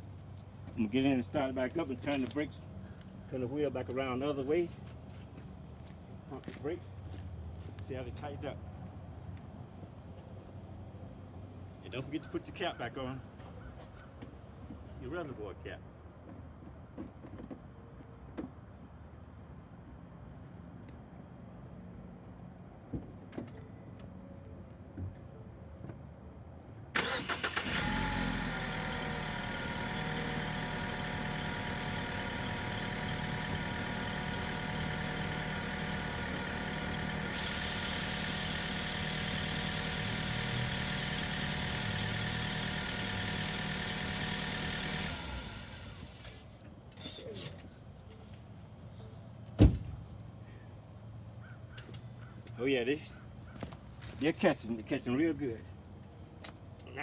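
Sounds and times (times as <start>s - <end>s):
car engine starting and idling: 26.9s - 46.6s
loud thump: 49.6s - 50.0s.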